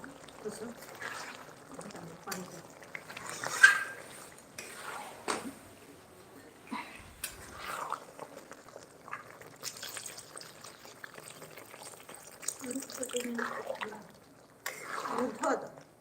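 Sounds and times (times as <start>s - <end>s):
liquid splashing or pouring: 7.0s - 15.8s.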